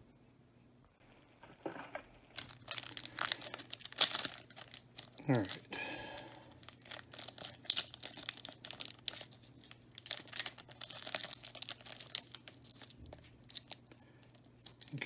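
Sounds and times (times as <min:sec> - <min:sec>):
foil wrapper crinkling and tearing: 0:01.7 - 0:15.0.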